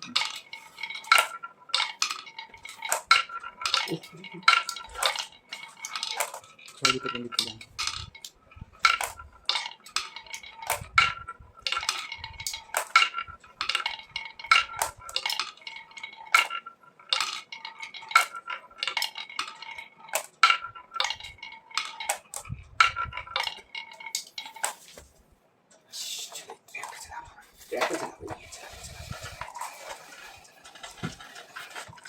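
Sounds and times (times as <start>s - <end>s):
hard toy pieces clinking: 0.0s - 25.1s.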